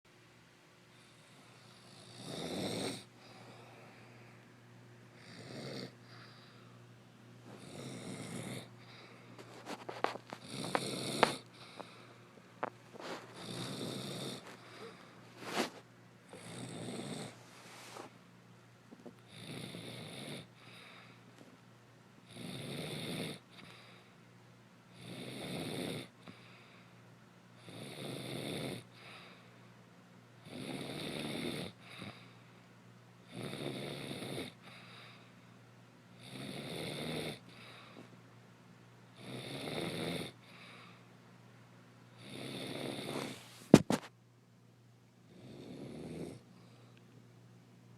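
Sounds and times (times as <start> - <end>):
woman snoring: 1.0 - 4.2, 5.2 - 6.5, 7.6 - 9.1, 10.0 - 11.9, 13.0 - 15.6, 16.3 - 17.4, 19.3 - 20.8, 22.3 - 23.6, 25.0 - 26.1, 27.6 - 29.0, 30.4 - 32.2, 33.3 - 34.6, 36.2 - 37.5, 39.2 - 40.4, 42.2 - 43.4, 45.3 - 46.4.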